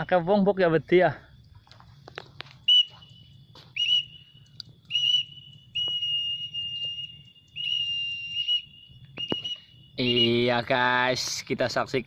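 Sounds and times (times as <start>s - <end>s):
high whistled calls: 2.5s - 11.1s.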